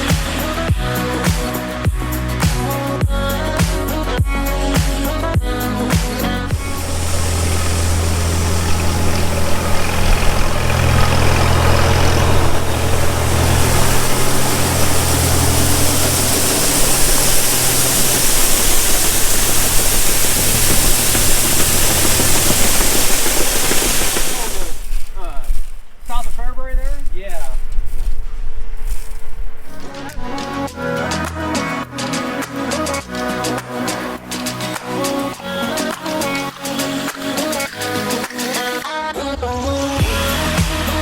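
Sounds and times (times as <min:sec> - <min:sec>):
strong hiss: 0:04.9 - 0:28.2
tractor engine humming: 0:05.2 - 0:32.9.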